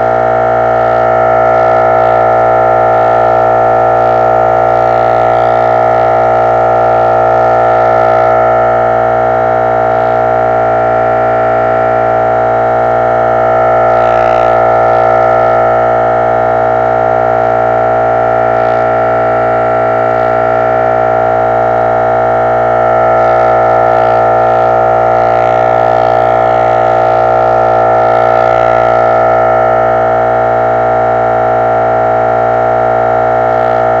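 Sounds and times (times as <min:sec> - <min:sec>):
electronic chord: 0:00.0 - 0:34.0.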